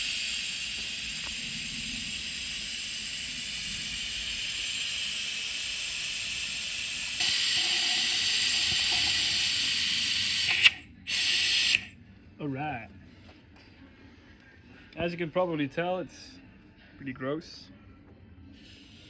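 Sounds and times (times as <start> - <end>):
suction tool hissing: 0.0 - 11.9.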